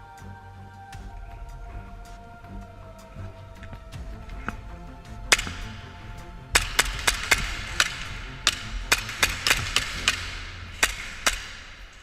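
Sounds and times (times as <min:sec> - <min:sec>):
airsoft pistol shots: 0:06.6 - 0:11.9.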